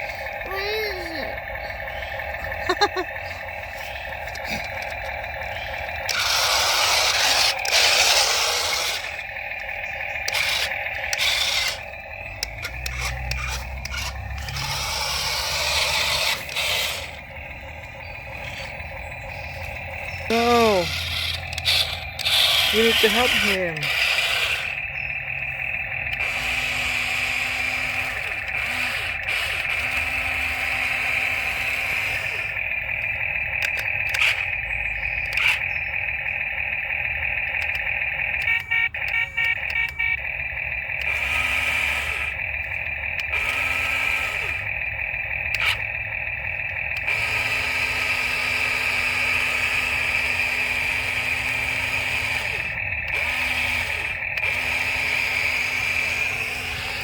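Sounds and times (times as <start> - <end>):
small electric motors whining: 0.0 - 57.0
clicks: 31.8 - 35.8, 37.4 - 47.2.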